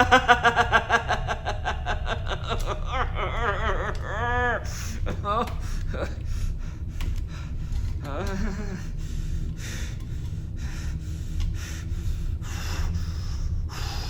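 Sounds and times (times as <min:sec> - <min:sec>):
steady low hum: 0:00.0 - 0:14.0
man moaning: 0:02.5 - 0:06.4, 0:08.0 - 0:09.0
man breathing heavily: 0:03.1 - 0:14.0.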